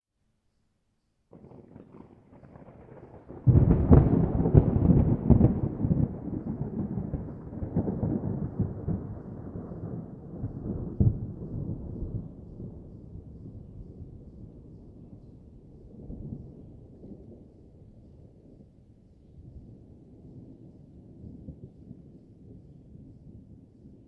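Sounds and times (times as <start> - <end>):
thunder rumbling and cracking: 1.3 - 18.7.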